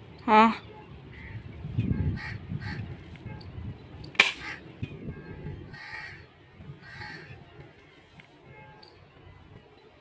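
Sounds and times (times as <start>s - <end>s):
crows cawing: 2.2s - 3.0s, 4.3s - 4.6s, 5.7s - 7.4s.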